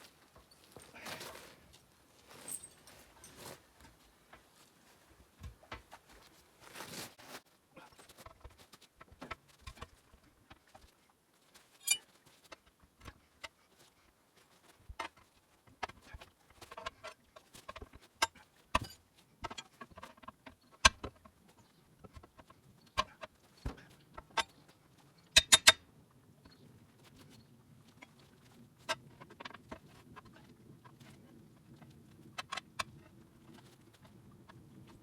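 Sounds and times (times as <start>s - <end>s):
metal tyre levers clinking on rim: 11.8s - 12.2s, 25.4s - 25.8s.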